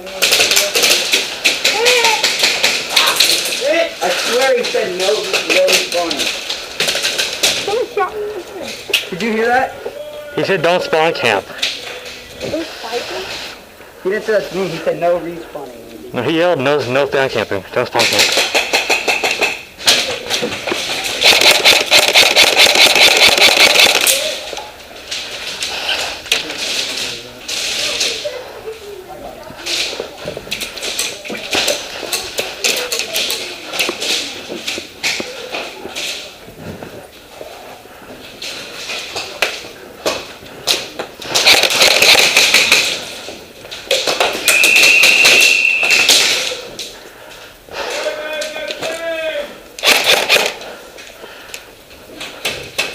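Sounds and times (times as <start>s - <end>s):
airsoft gun full-auto firing: 21.2s - 24.2s, 41.4s - 42.8s, 49.8s - 50.6s
sharp clicks: 21.2s - 24.2s, 41.3s - 42.9s, 49.8s - 50.6s.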